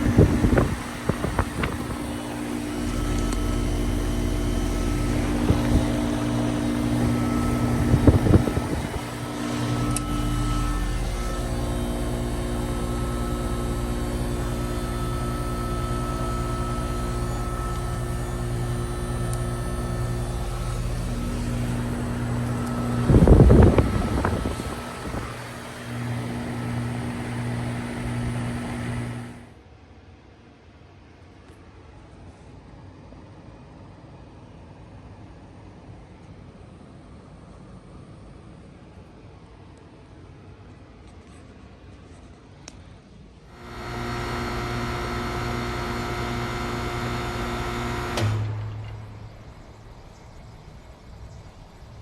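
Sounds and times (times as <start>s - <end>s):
heat pump compressor hum: 0.0s - 29.8s, 42.6s - 52.0s.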